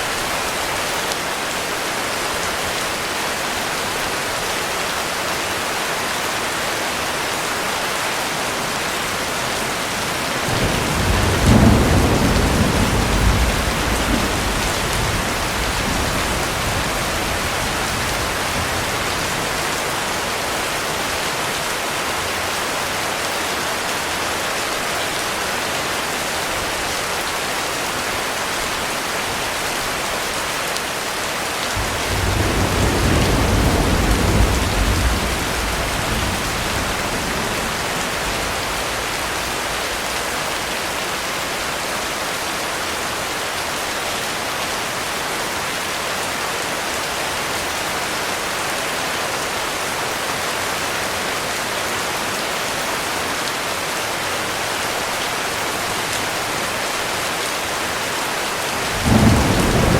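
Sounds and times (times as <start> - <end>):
heavy rain falling: 0.0 - 59.9
thunder rumbling: 9.1 - 20.4, 31.8 - 41.0, 58.9 - 59.9.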